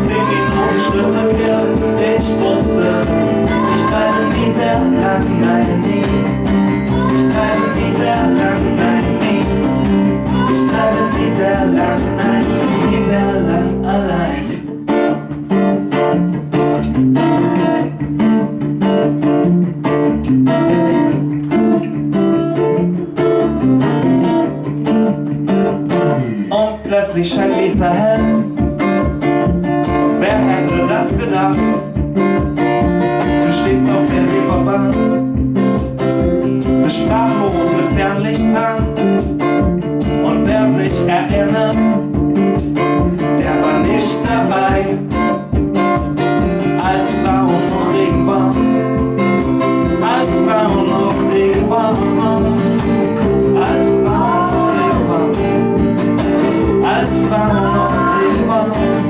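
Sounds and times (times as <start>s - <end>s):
live band playing: 0.0s - 13.2s, 27.8s - 37.8s, 38.4s - 59.0s
guitar: 0.0s - 59.0s.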